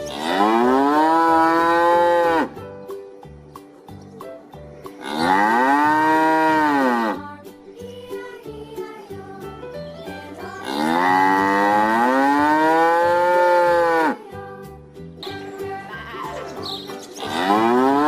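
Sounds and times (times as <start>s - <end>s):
cow mooing: 0.0s - 2.6s, 5.0s - 7.2s, 10.6s - 14.2s, 17.3s - 18.0s.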